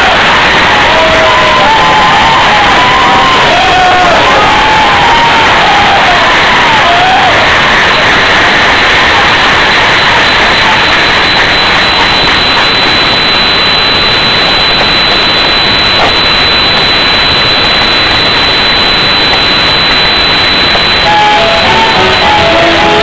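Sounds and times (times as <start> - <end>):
high whine: 0.0 - 23.0
loud distorted applause: 0.0 - 23.0
music: 21.1 - 23.0.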